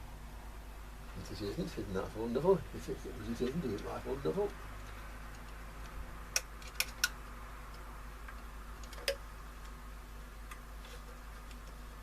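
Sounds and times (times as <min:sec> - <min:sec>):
steady low hum: 0:00.0 - 0:12.0
metal test probes clicking: 0:05.3 - 0:09.8.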